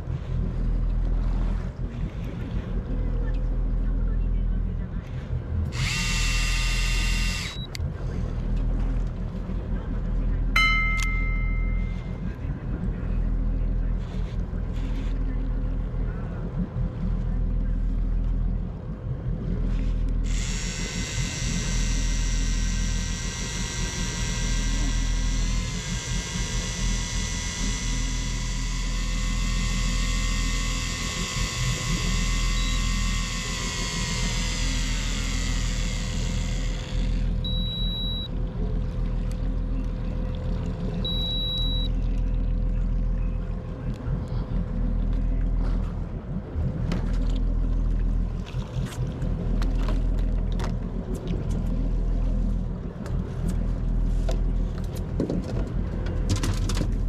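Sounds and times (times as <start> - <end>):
boat engine rumbling: 0.0 - 57.0
high motor whine: 0.0 - 57.0
short high beeps: 10.6 - 12.1, 37.4 - 38.3, 41.1 - 41.9.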